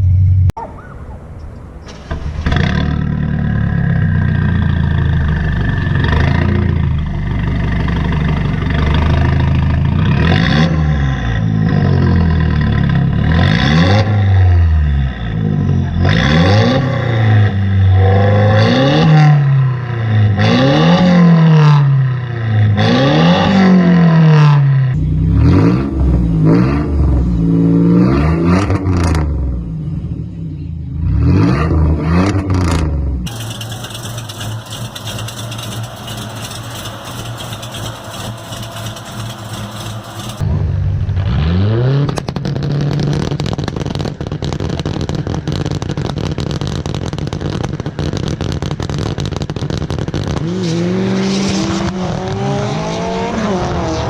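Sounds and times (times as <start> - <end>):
car engines revving: 1.3 - 44.0, 50.2 - 54.0
exhaust cracks: 32.4 - 48.5.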